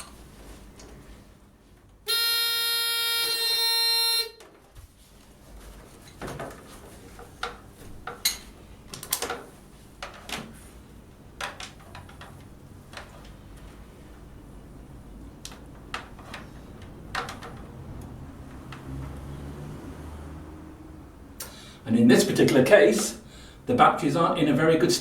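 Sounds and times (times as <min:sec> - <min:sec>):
fire alarm panel buzzer: 0:02.1 - 0:04.4.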